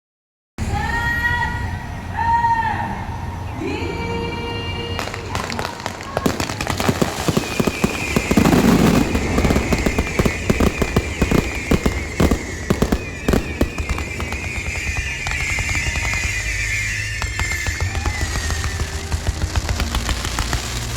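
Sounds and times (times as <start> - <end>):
whistling fireworks: 0.7 - 20.9
firecracker bangs: 5.0 - 20.9.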